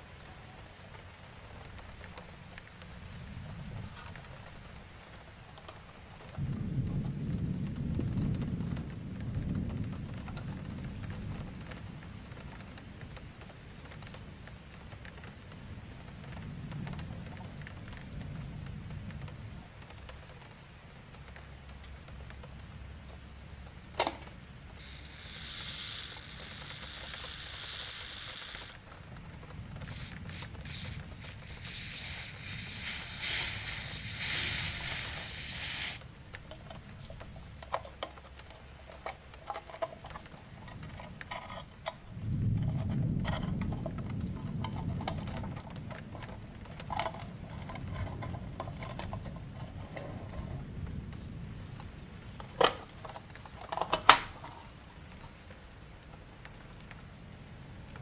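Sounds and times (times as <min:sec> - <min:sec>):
hissing noise: 0:24.8 - 0:28.8, 0:29.8 - 0:38.1
small metal parts clicking and scraping: 0:24.8 - 0:28.8, 0:29.8 - 0:50.5.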